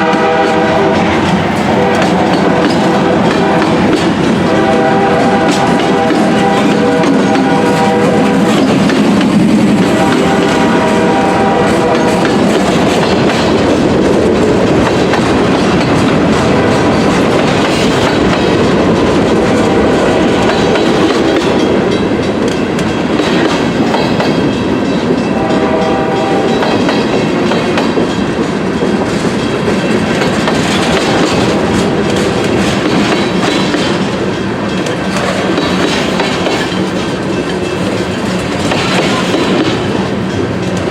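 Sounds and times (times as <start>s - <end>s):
train horn: 0.0s - 9.0s, 9.7s - 13.4s, 15.8s - 21.9s, 25.1s - 27.9s, 30.6s - 32.4s
train wheels rumbling on rails: 0.0s - 40.9s.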